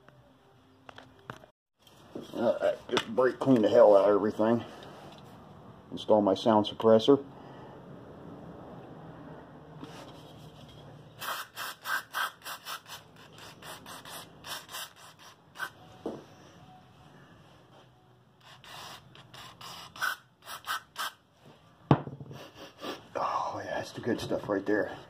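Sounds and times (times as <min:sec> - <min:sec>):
aerosol spray hissing bursts: 0:11.2 - 0:15.7.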